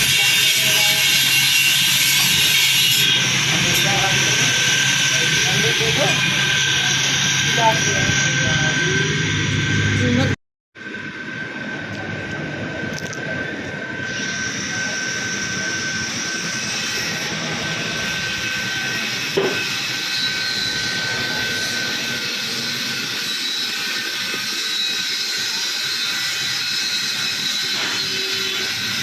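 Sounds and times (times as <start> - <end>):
high-pressure jet hissing: 0.0 - 9.4, 14.1 - 29.0
machine whine: 0.0 - 29.0.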